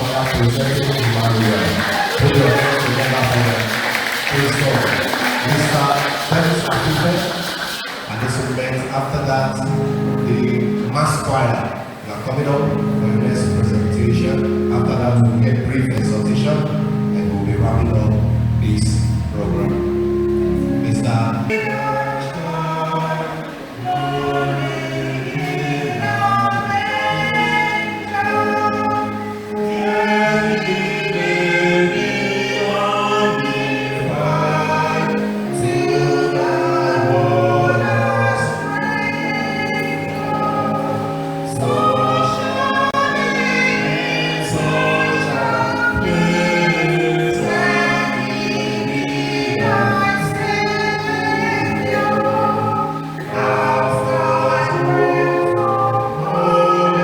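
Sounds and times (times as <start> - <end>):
choir singing: 0.0 - 57.0.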